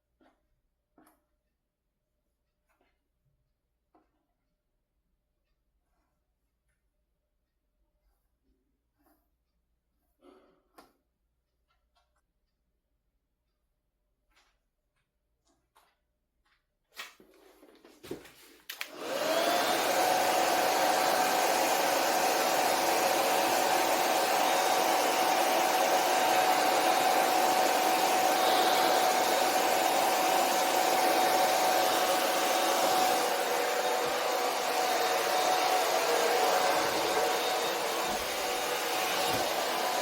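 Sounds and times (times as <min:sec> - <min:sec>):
hair dryer running: 0:18.7 - 0:40.0.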